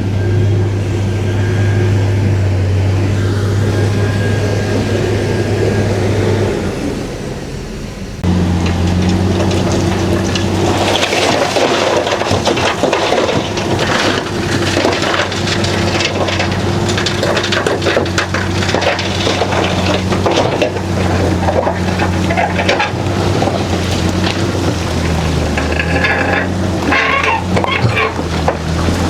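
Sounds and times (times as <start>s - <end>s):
bulldozer diesel engine running: 0.0s - 29.0s
rock crunching and grinding: 8.2s - 29.0s.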